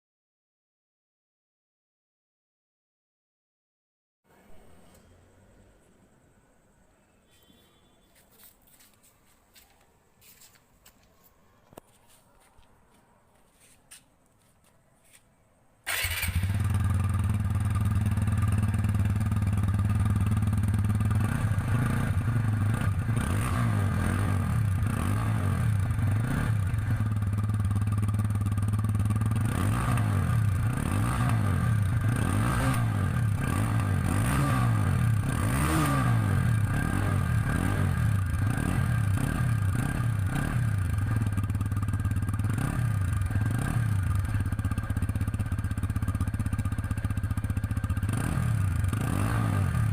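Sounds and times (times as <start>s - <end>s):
motorcycle engine idling and revving: 15.9s - 49.9s.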